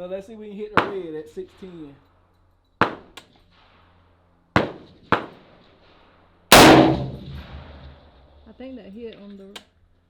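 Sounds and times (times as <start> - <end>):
rifle shot with echo: 6.5 - 8.0
sharp cracks: 6.5 - 8.1.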